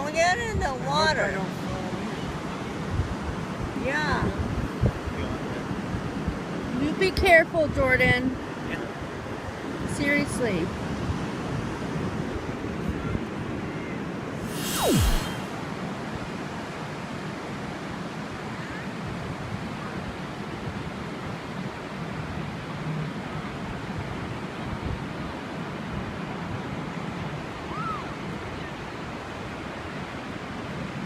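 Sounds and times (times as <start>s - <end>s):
wind buffeting microphone: 0.0s - 7.0s
waves on a shore: 0.0s - 15.8s, 16.6s - 31.0s.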